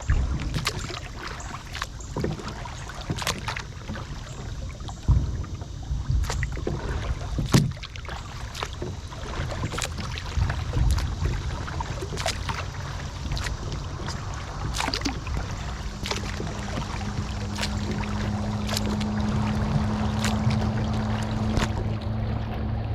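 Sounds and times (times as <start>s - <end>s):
low rumble: 0.0s - 2.9s, 3.6s - 22.9s
paddle splashing in water: 0.0s - 22.9s
steady low hum: 0.0s - 22.9s
paddle knocks: 0.1s - 22.1s.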